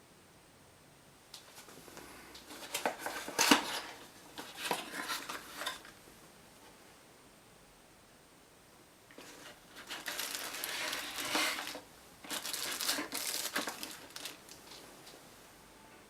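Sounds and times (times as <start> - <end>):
small hard objects clattering: 9.2 - 14.8.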